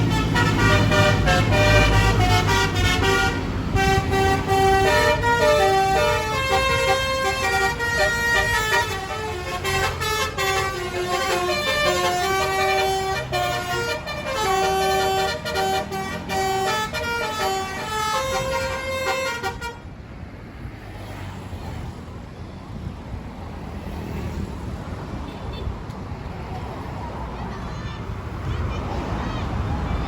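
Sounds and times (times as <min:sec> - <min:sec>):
low engine rumble: 0:00.0 - 0:19.8
musical air horn tune: 0:00.0 - 0:19.8.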